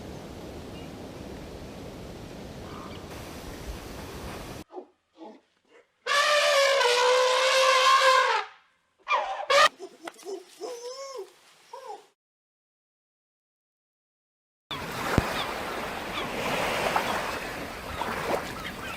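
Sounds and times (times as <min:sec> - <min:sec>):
dog whining and whimpering: 0:09.7 - 0:12.1.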